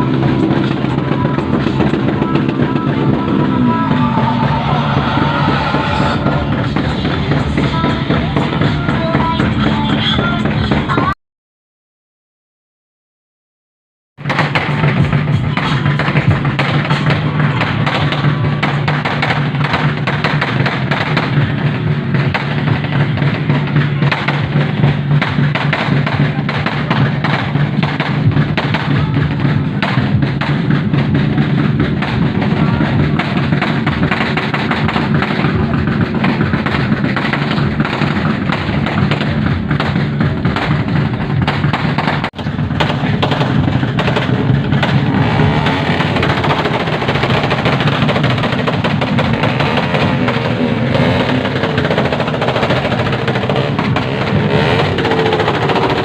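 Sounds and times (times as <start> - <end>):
music with drum beat and heavy bass: 0.0 - 11.1, 14.2 - 56.0
voices: 0.0 - 11.2, 14.9 - 41.7.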